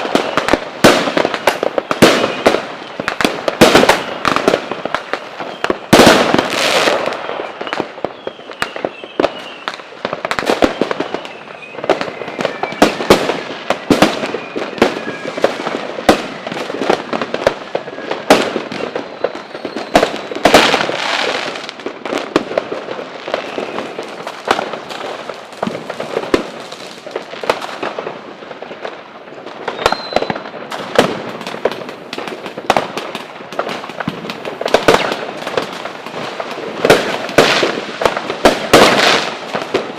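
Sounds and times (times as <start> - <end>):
firework whistles gliding in pitch: 0.0 - 0.6, 1.2 - 21.8, 23.2 - 25.2, 29.6 - 30.6
fireworks bangs and crackling: 0.0 - 39.9.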